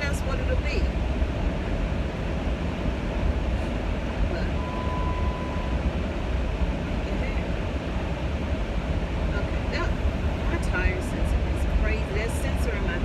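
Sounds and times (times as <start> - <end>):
car cabin road rumble: 0.0 - 13.0
steady beep: 4.4 - 5.8.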